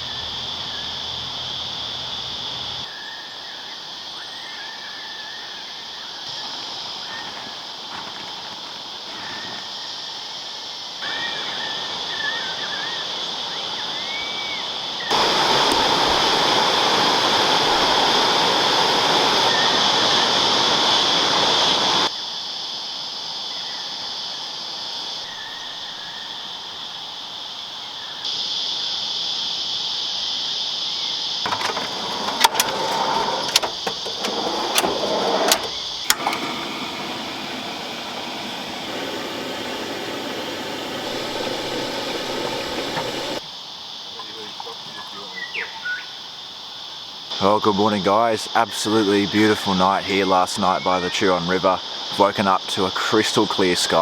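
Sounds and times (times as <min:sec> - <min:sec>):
river water flowing: 0:15.2 - 0:19.5, 0:34.2 - 0:43.4
knocks and clatters: 0:31.5 - 0:36.7.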